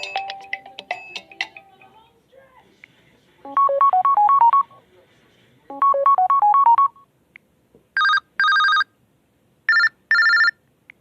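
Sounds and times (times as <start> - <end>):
electronic beeping ringtone: 0.0 - 1.6, 3.5 - 4.8, 5.7 - 7.0, 8.0 - 8.9, 9.7 - 10.6
telephone-style ringing: 8.0 - 8.9, 9.7 - 10.6.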